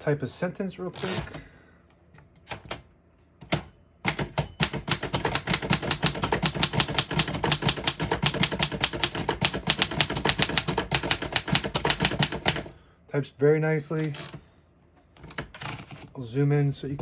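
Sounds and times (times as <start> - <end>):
manual typewriter typing: 1.0 - 1.4, 3.4 - 12.8, 13.9 - 14.4, 15.2 - 16.1.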